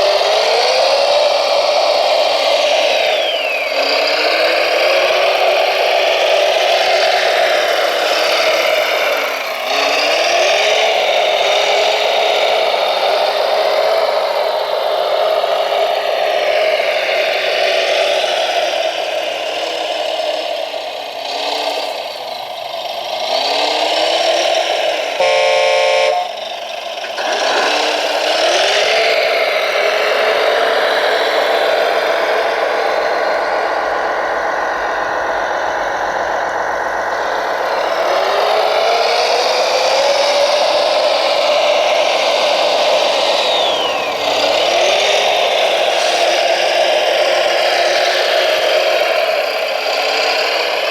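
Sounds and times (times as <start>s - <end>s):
electric motor and gearbox whine: 1.7s - 13.5s, 24.6s - 28.8s, 40.6s - 47.6s
horn: 25.2s - 26.4s.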